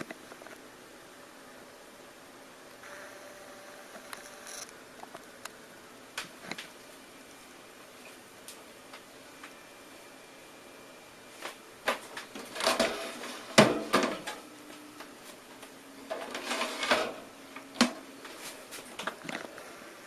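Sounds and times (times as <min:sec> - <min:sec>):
rattling scrapes: 0:16.1 - 0:17.2.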